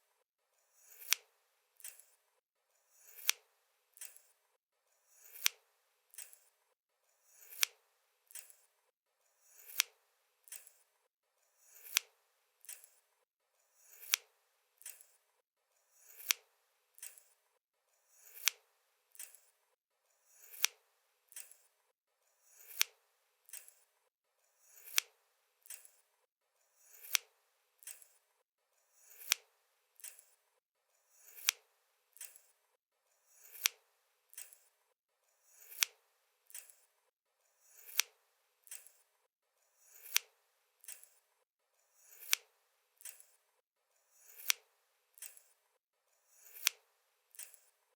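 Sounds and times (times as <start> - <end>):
scissors snipping: 0.9 - 2.2, 3.0 - 4.4, 5.2 - 6.5, 7.4 - 8.7, 9.6 - 10.8, 11.8 - 13.0, 13.9 - 15.2, 16.1 - 17.3, 18.2 - 19.5, 20.4 - 21.7, 22.6 - 23.8, 24.8 - 26.0, 26.9 - 28.2, 29.1 - 30.4, 31.2 - 31.6, 32.2 - 32.5, 33.4 - 34.7, 35.6 - 36.8, 37.8 - 39.0, 39.9 - 41.2, 42.1 - 43.4, 44.3 - 45.5, 46.4 - 47.7.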